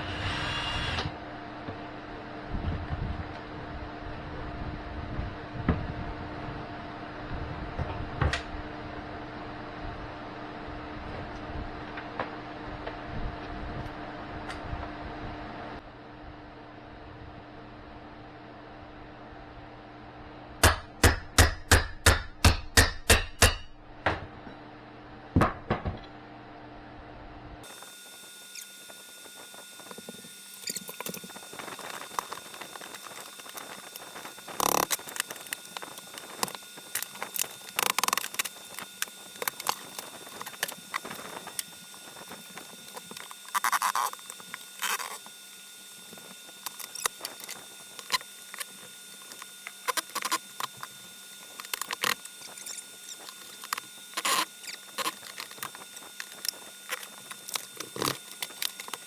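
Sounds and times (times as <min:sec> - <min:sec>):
loud scrapes: 0:00.0 - 0:01.2.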